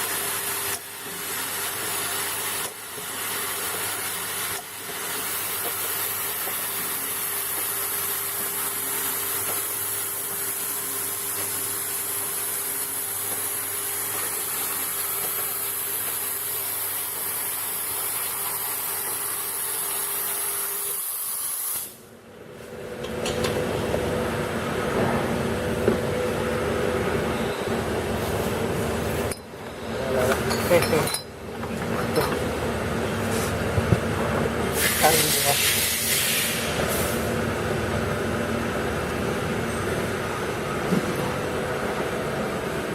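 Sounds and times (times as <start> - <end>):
filling machine humming and hissing: 0.0 - 22.2, 32.6 - 42.9.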